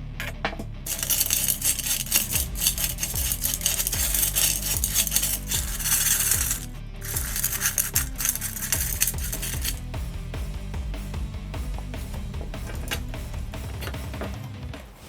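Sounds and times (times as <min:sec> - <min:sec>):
background music: 0:00.0 - 0:15.0
metallic scraping and clicking: 0:00.2 - 0:09.8, 0:12.7 - 0:13.1.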